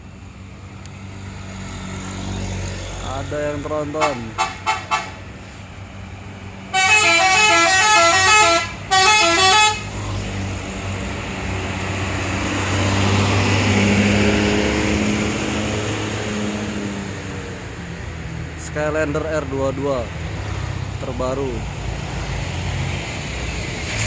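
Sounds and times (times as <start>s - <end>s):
bus engine: 0.0s - 24.0s
bus horn playing tune: 4.0s - 5.2s, 6.7s - 10.0s.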